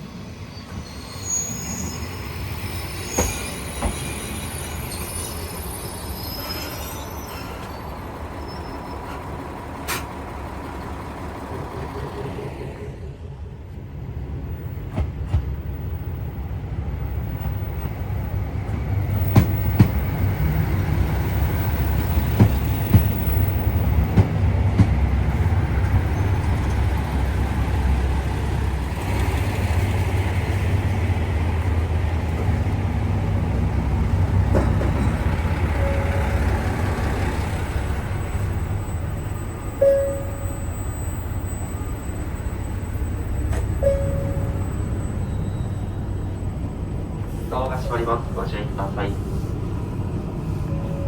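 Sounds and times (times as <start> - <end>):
railcar rumbling along track: 0.0 - 51.0
short high tone: 35.8 - 36.8, 39.8 - 41.2, 43.8 - 46.0.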